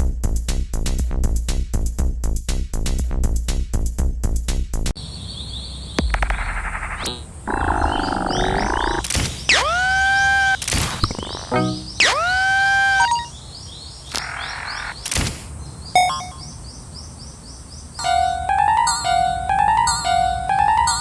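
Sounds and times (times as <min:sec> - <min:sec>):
high chirps: 0:05.7 - 0:13.5, 0:16.0 - 0:16.6
electronic crossing alarm: 0:11.4 - 0:13.4.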